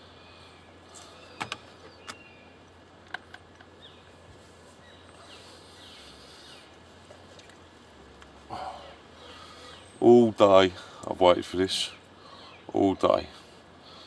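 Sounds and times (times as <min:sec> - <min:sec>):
birds chirping faintly: 0:00.0 - 0:14.0.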